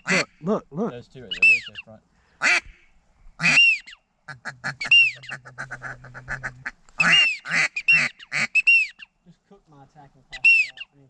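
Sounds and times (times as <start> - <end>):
duck chattering: 0.0 - 0.7, 1.3 - 2.8, 3.4 - 9.1, 10.3 - 11.0
duck whistled calls: 1.3 - 1.8, 3.4 - 4.0, 4.6 - 9.1, 10.3 - 10.9.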